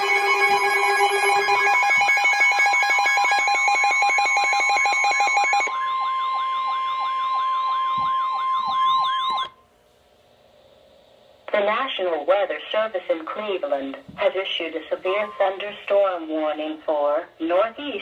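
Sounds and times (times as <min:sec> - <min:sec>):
electronic alert tones: 0:00.0 - 0:09.5
pulsing sweeping siren: 0:00.0 - 0:09.6.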